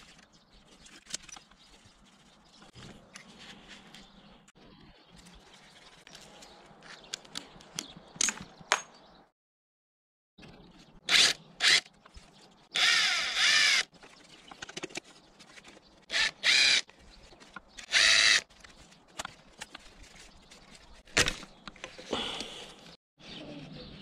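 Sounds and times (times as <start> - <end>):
power drill motor whine: 12.8 - 13.8, 16.1 - 16.8, 17.9 - 18.4.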